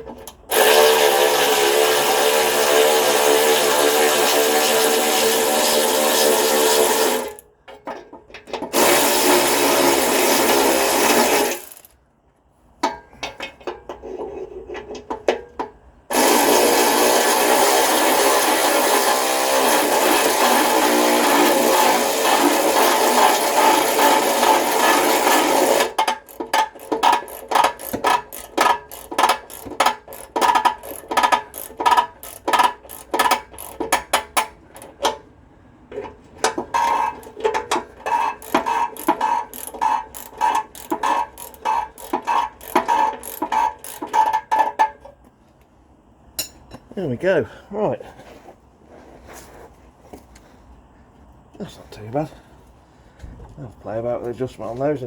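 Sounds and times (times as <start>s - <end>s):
power tool running in bursts: 0.5s - 7.4s, 8.8s - 11.9s, 16.1s - 26.0s.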